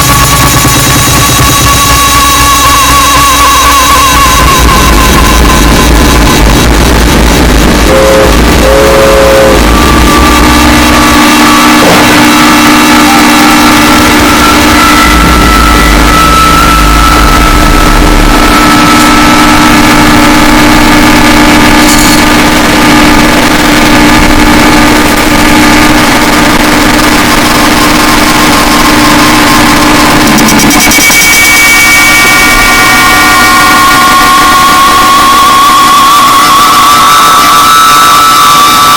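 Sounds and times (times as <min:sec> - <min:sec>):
deep rumble: 0:00.0 - 0:31.0
distorted noise music: 0:00.0 - 0:38.9
steady droning tones: 0:00.0 - 0:38.9.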